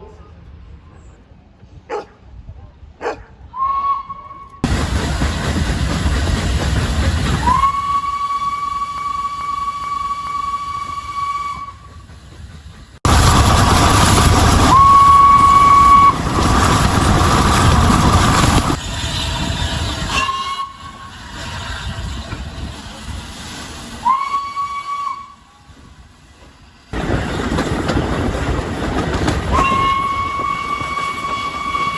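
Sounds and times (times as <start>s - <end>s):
steam locomotive whistle blasts: 3.5s - 4.6s, 7.4s - 12.0s, 14.6s - 16.3s, 20.0s - 21.2s, 24.0s - 25.7s, 29.5s - 31.9s
train rushing hiss: 4.6s - 31.9s.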